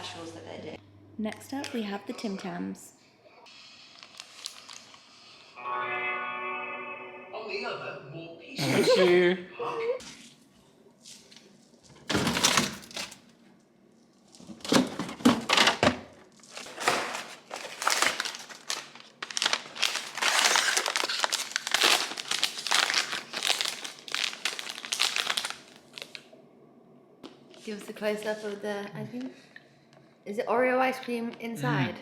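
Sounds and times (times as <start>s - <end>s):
plastic wrapper crinkling: 3.9s - 5.2s, 16.3s - 26.3s.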